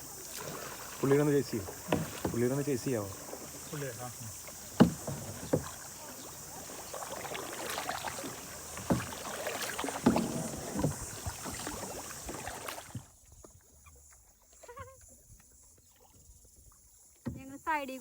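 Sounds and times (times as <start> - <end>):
paddle splashing water: 0.0 - 17.4
sharp knocks: 4.8 - 5.8.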